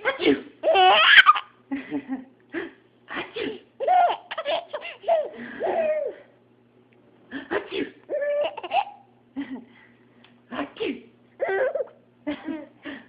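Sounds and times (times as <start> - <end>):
baby laughing: 0.6 - 1.6, 3.8 - 6.3, 8.1 - 9.1, 11.4 - 12.7.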